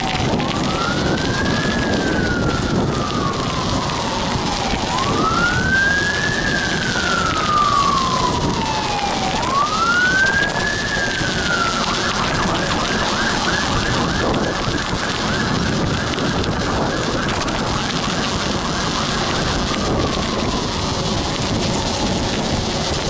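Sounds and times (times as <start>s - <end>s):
emergency siren wailing and yelping: 0.0s - 23.0s.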